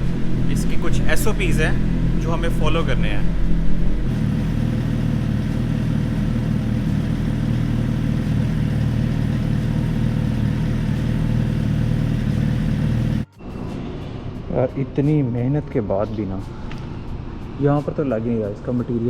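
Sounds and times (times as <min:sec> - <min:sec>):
motorcycle engine idling: 0:03.3 - 0:13.3.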